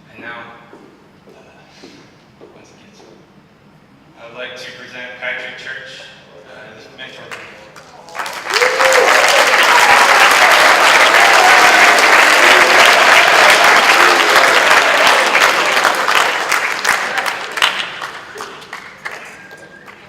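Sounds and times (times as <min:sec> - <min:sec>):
audience applauding: 0:07.3 - 0:20.0.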